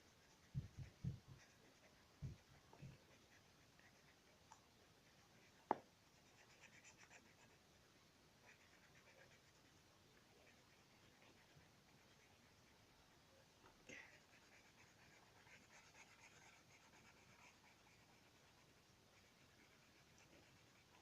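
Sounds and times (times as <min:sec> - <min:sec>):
drawing tool scratching on paper: 0:00.0 - 0:04.3, 0:14.0 - 0:21.0.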